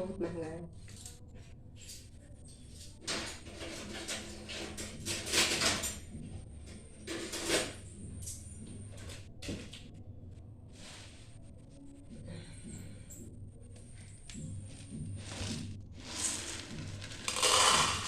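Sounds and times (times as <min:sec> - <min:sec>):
kitchen utensils scraping and knocking: 0:03.0 - 0:06.0, 0:07.1 - 0:07.8, 0:15.2 - 0:18.0.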